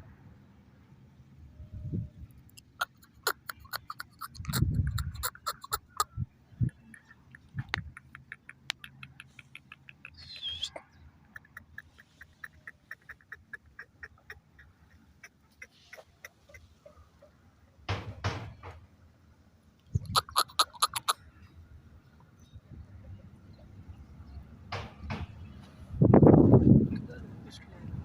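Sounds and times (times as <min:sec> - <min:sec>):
high bird chirp: 0:02.7 - 0:16.7.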